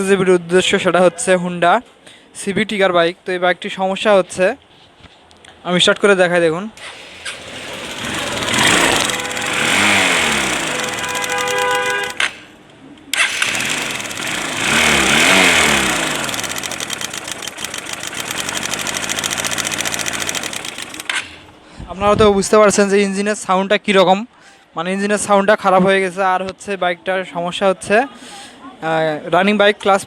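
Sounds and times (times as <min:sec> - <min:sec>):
motorcycle engine revving: 0:06.8 - 0:21.5.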